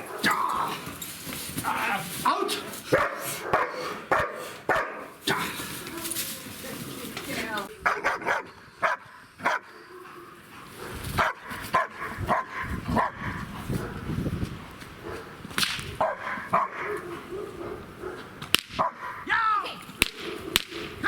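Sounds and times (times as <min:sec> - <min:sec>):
dog barking: 0:02.9 - 0:05.1, 0:07.8 - 0:14.0, 0:15.0 - 0:15.3, 0:16.0 - 0:19.3, 0:20.2 - 0:21.0.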